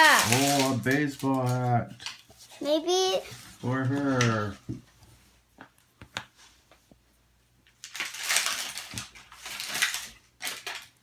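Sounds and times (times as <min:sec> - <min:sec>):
plastic packaging crinkling: 0:00.0 - 0:02.2, 0:07.8 - 0:11.0.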